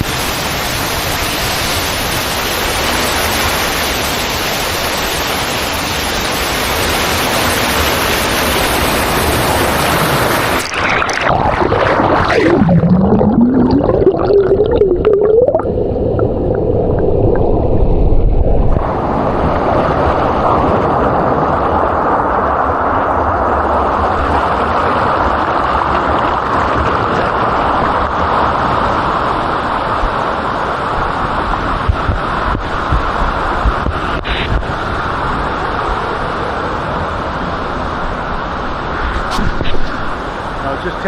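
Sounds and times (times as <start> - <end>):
cascading water rushing: 0.0 - 15.6
creek water heard underwater: 0.0 - 41.0.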